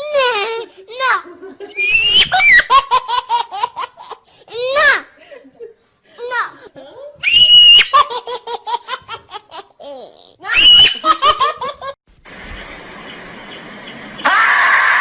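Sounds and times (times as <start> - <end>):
baby laughing and shrieking: 1.7 - 3.8, 7.2 - 8.3, 9.1 - 12.0, 14.2 - 15.0
steady hiss: 12.1 - 14.3.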